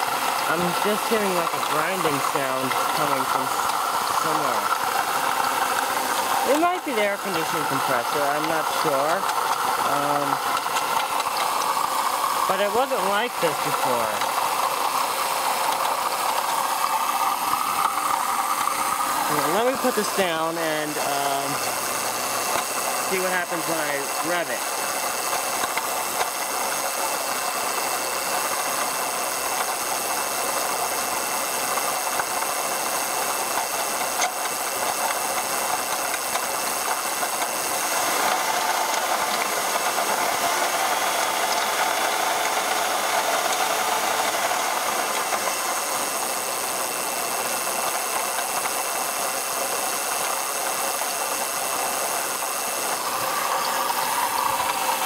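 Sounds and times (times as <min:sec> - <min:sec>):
car engine running: 0:00.0 - 0:55.0
grinding rattling engine noise: 0:00.0 - 0:55.0.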